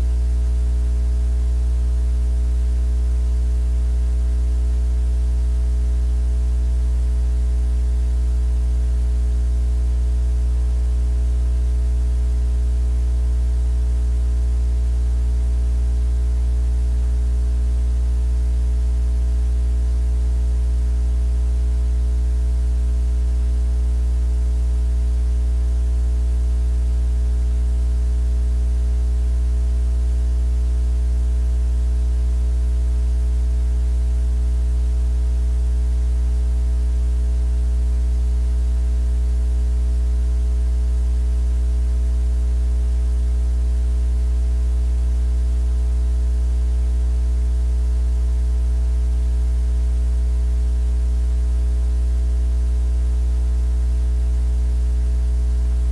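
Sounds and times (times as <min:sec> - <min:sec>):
low electrical hum: 0:00.0 - 0:09.3, 0:55.7 - 0:55.9.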